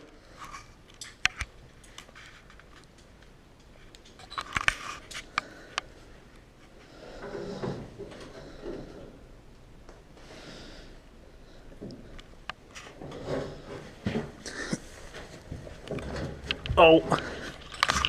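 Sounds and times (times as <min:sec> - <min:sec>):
muffled rubbing and scraping: 0:12.6 - 0:18.0.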